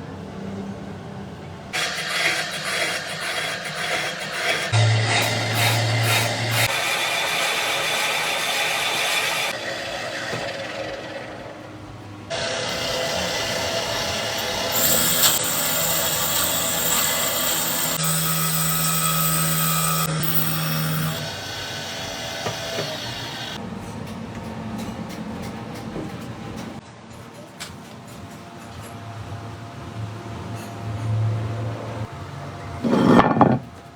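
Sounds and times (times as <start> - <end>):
power tools humming and whining: 3.0 - 23.6.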